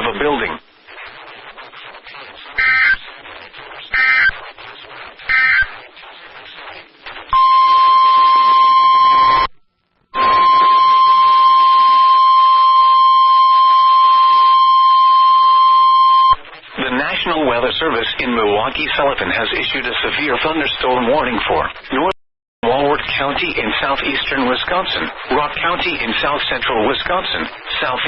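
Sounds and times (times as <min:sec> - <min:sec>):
radio hiss: 0:00.0 - 0:09.5, 0:10.2 - 0:14.3, 0:15.4 - 0:22.1, 0:22.7 - 0:28.0
warbling data bursts: 0:00.9 - 0:09.5, 0:10.2 - 0:16.4.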